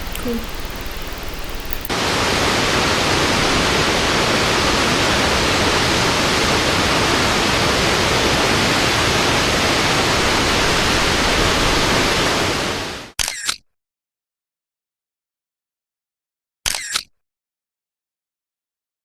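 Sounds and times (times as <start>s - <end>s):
waterfall rushing: 0.0s - 13.1s.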